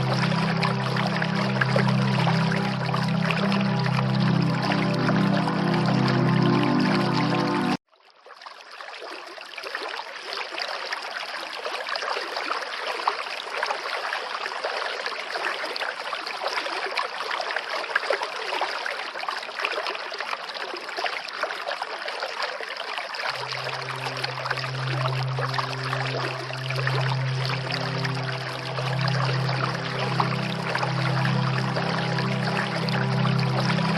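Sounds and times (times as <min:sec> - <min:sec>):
running water rushing: 0:00.0 - 0:07.8, 0:16.8 - 0:33.9
soft background music: 0:00.0 - 0:07.8, 0:23.3 - 0:33.9.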